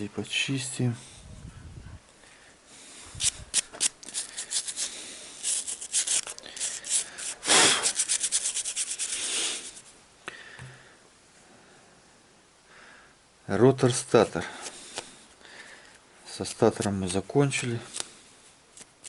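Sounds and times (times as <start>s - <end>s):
brush scrubbing a motor: 4.0s - 9.8s.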